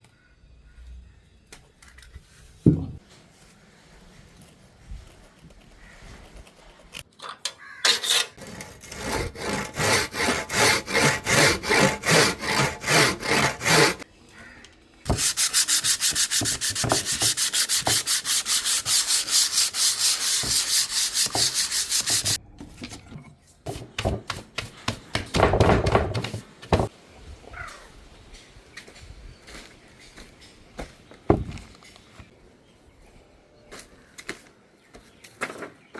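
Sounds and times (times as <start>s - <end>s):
sandpaper rubbing on wood: 8.5s - 14.0s, 15.1s - 22.4s.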